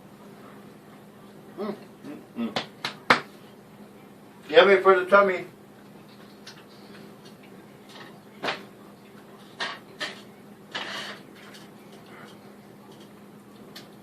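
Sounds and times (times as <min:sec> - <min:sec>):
low steady hum: 0:00.0 - 0:14.0
utensils and cookware clattering: 0:09.4 - 0:13.2.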